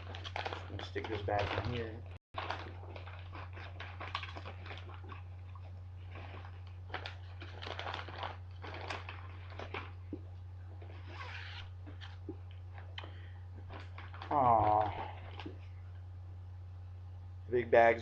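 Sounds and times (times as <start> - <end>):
paper bag crinkling: 0.0 - 5.3, 6.0 - 10.1, 10.7 - 15.6
steady low hum: 0.0 - 18.0.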